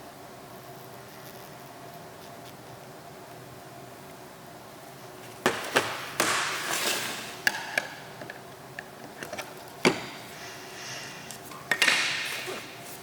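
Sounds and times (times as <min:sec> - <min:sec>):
objects knocking and clattering: 0:05.4 - 0:10.2, 0:11.5 - 0:12.6.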